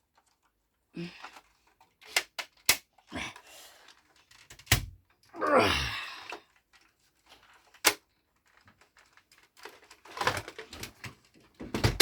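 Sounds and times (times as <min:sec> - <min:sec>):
plastic toy parts clicking: 0:01.3 - 0:03.1, 0:06.3 - 0:10.8.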